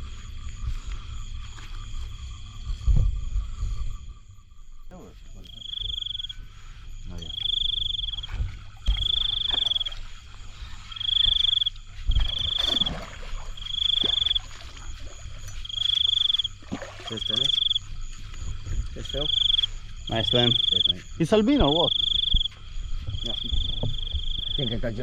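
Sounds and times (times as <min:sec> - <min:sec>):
frog trilled call: 0:05.4 - 0:06.4, 0:07.2 - 0:08.3, 0:08.9 - 0:10.0, 0:10.8 - 0:12.9, 0:15.6 - 0:17.8, 0:19.2 - 0:22.5, 0:23.2 - 0:24.7.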